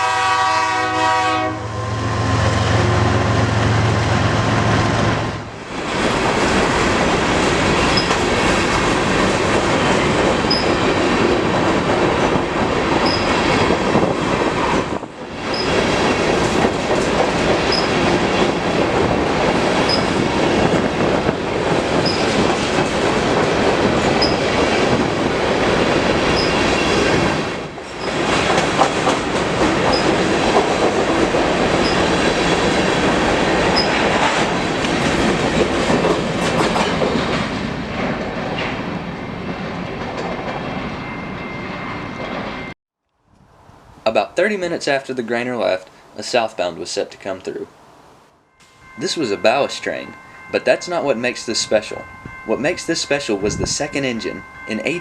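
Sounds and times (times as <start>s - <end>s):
train wheels rumbling on rails: 0.0s - 42.8s, 48.6s - 55.0s
wheel squeal: 7.8s - 8.2s, 10.5s - 10.8s, 13.0s - 13.4s, 15.5s - 15.8s, 17.7s - 18.0s, 19.8s - 20.2s, 22.0s - 22.3s, 24.2s - 24.5s, 26.3s - 27.0s, 29.9s - 30.1s, 31.8s - 32.1s, 33.8s - 34.0s.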